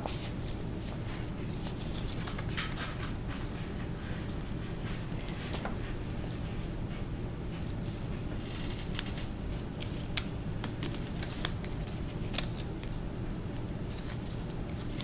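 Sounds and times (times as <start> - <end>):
steady low hum: 0.0 - 15.0
foil wrapper crinkling: 8.4 - 13.0, 13.6 - 15.0.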